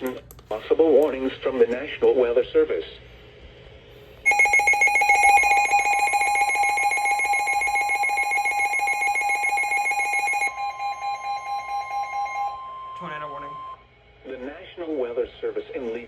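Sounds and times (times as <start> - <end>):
pulsing electronic alarm: 4.2 - 13.9
steady alarm tone: 4.2 - 14.1.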